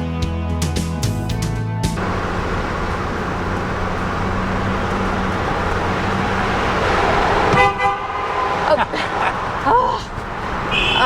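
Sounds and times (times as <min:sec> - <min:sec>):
low engine hum: 0:02.0 - 0:11.0
tyre and road noise: 0:02.0 - 0:11.0.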